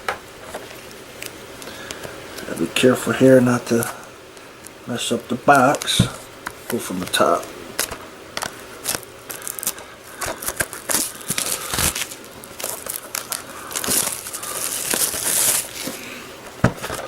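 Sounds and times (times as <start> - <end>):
plastic wrap crinkling: 5.5 - 17.0.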